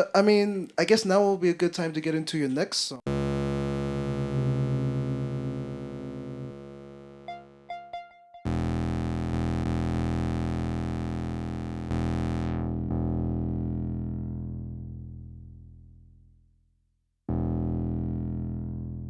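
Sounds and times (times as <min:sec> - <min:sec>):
loud sustained synth chord: 0:03.1 - 0:07.8
short synth blips: 0:03.1 - 0:09.0
held synth tones: 0:03.1 - 0:09.2.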